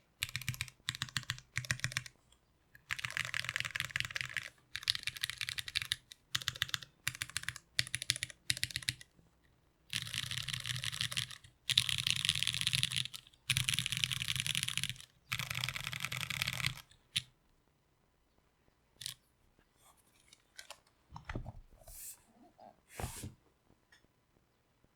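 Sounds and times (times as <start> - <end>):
typing on mechanical keyboard: 0.2 - 2.1, 2.8 - 9.1, 9.9 - 17.3
keyboard being handled: 20.2 - 22.1.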